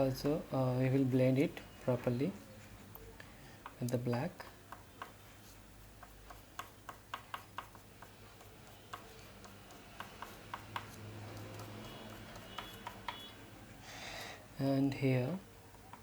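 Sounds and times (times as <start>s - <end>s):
oil pastel scratching on paper: 5.0s - 13.3s.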